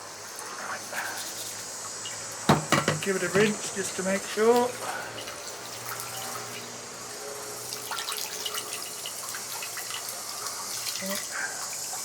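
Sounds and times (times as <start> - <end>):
water splashing and trickling: 0.4 - 12.0
small knocks: 2.5 - 3.6.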